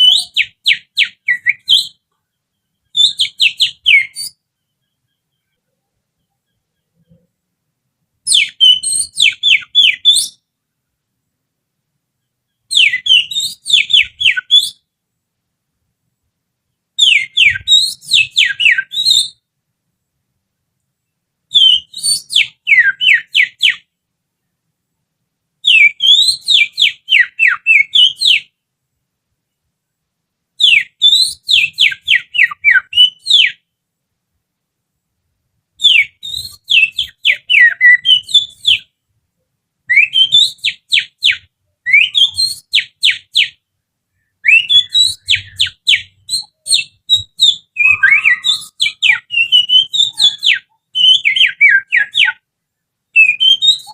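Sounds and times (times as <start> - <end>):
finger whistling birdsong imitation: 0.0 - 7.3, 8.2 - 10.4, 12.5 - 14.8, 17.0 - 19.4, 21.5 - 23.9, 25.7 - 28.5, 30.6 - 33.6, 35.8 - 38.9, 39.9 - 43.6, 44.2 - 52.4, 53.2 - 53.9.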